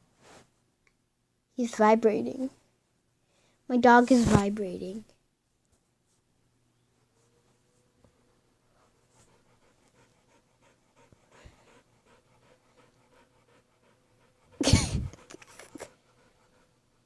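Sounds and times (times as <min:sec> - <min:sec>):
dog panting: 0:08.2 - 0:17.0.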